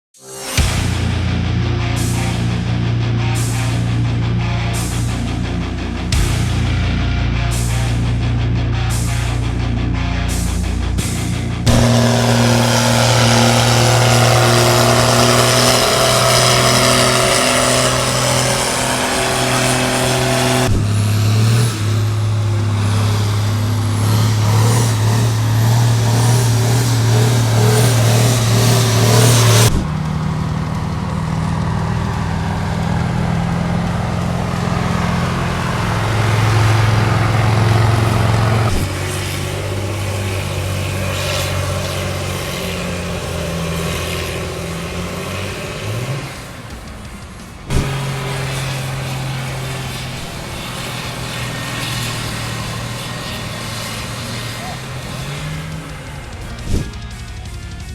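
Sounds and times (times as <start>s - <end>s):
tractor engines running hard: 0.2s - 57.9s.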